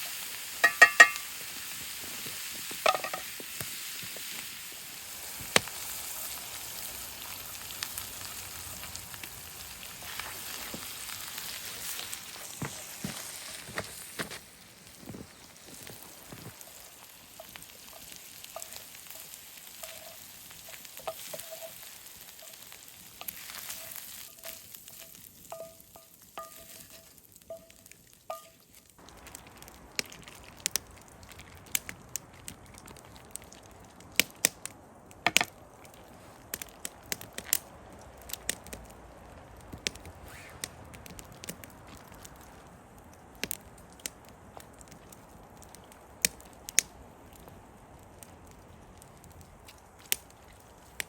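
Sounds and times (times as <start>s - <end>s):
food sizzling in skillet: 0.0s - 33.6s, 39.8s - 42.8s.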